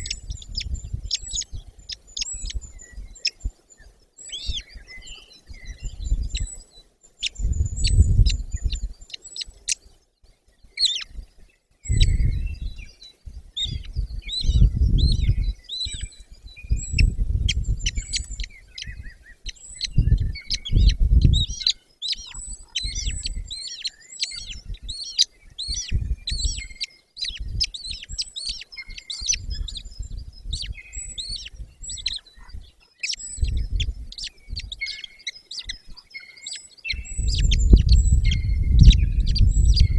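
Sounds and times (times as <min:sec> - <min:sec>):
low rumbling gusts: 0:00.0 - 0:03.5, 0:05.5 - 0:06.5, 0:07.4 - 0:09.0, 0:11.2 - 0:19.1, 0:19.9 - 0:21.6, 0:25.6 - 0:26.7, 0:27.4 - 0:28.2, 0:29.2 - 0:32.7, 0:33.3 - 0:34.8, 0:36.9 - 0:39.9
birds chirping: 0:00.0 - 0:39.9.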